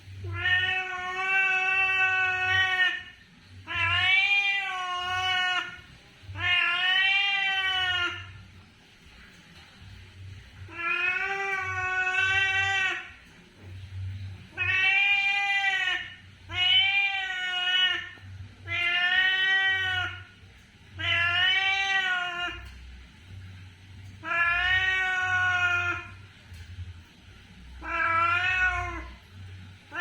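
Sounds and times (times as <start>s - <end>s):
cat meowing: 0.2s - 8.4s, 10.7s - 13.2s, 14.5s - 20.3s, 21.0s - 22.7s, 24.2s - 26.2s, 27.8s - 29.2s.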